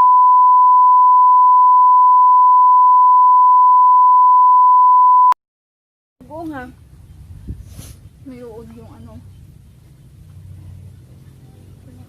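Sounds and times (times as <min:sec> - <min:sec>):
censor bleep: 0:00.0 - 0:05.4.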